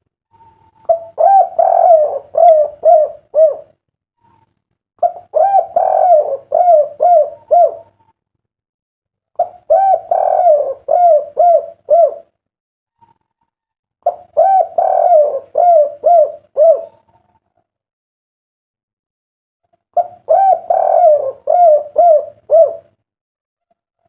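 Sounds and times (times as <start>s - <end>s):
dove cooing: 0.4s - 4.4s, 5.0s - 8.1s, 9.4s - 12.3s, 14.0s - 17.6s, 20.0s - 23.0s.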